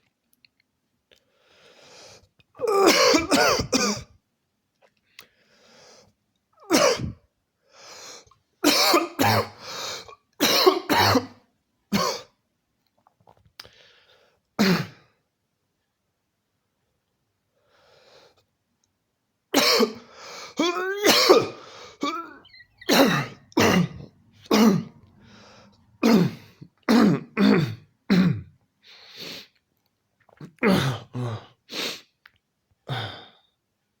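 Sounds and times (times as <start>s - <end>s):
person coughing: 2.6s - 4.2s, 6.6s - 7.2s, 8.6s - 9.6s, 10.4s - 12.4s, 19.6s - 25.0s, 26.0s - 28.5s, 30.6s - 31.6s.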